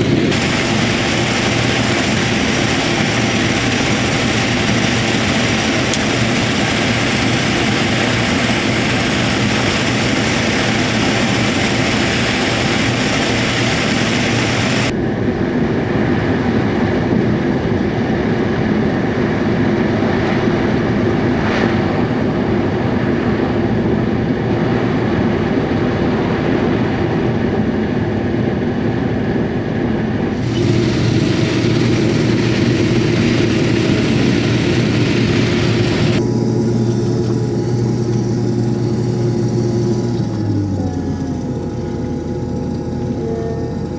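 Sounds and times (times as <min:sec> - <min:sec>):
combine harvester drone: 0:00.0 - 0:43.9
engine hum: 0:00.0 - 0:43.9
high hiss: 0:30.4 - 0:40.6.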